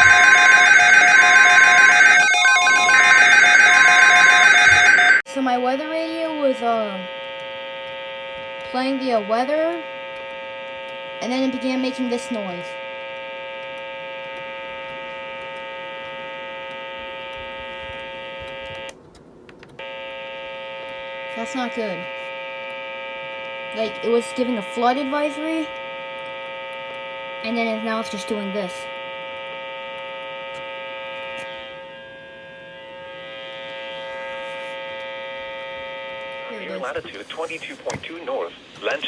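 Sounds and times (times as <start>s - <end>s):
harsh multi-pitch radio tone: 0.0s - 5.2s, 27.0s - 39.0s
harsh buzzing tone: 0.0s - 5.3s, 6.1s - 19.0s, 19.8s - 36.9s.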